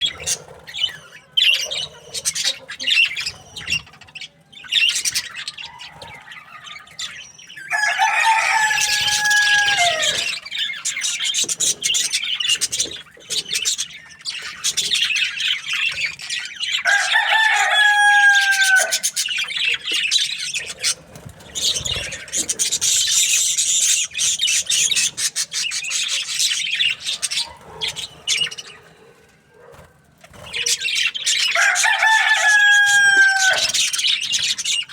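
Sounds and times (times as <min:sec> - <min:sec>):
budgerigars chattering and chirping: 0:00.0 - 0:34.9
rooster crowing: 0:07.6 - 0:10.5, 0:16.8 - 0:19.1, 0:31.4 - 0:34.0.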